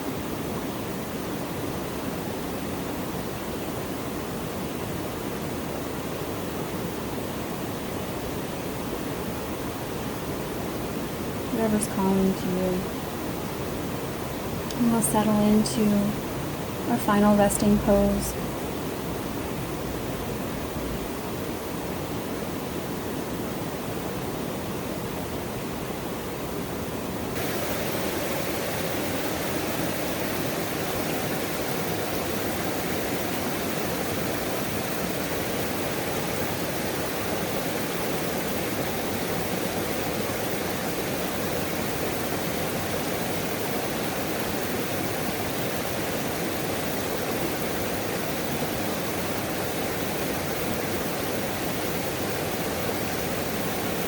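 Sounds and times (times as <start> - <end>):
waterfall rushing: 27.4 - 38.1.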